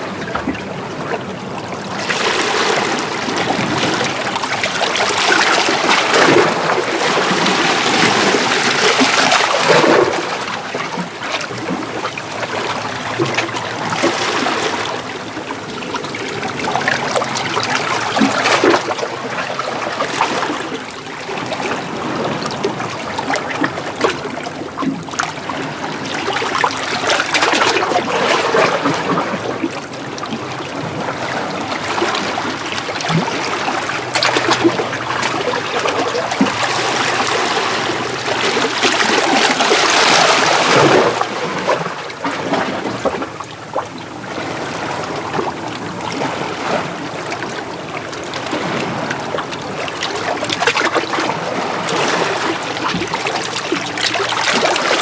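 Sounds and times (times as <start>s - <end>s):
small waves washing over rocks: 1.8s - 24.3s, 25.6s - 43.3s.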